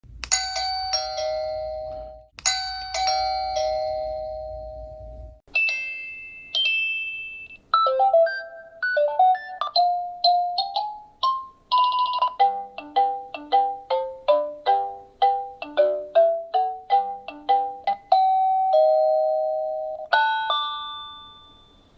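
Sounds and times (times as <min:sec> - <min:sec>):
doorbell ding-dong chime: 0:00.4 - 0:10.6, 0:18.1 - 0:21.9.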